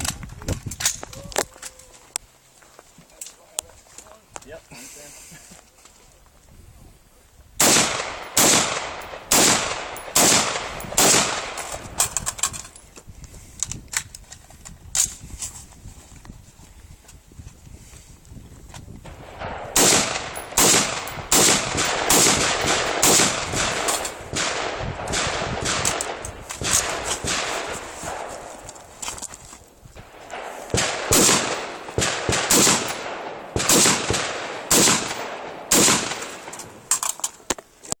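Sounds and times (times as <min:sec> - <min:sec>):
rifle shots echoing: 0:07.6 - 0:11.8, 0:19.1 - 0:28.7, 0:30.0 - 0:36.8.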